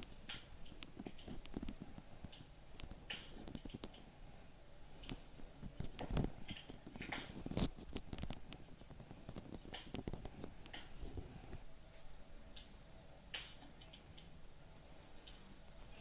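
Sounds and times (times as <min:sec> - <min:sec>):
fireplace fire crackling and popping: 0:00.0 - 0:16.0.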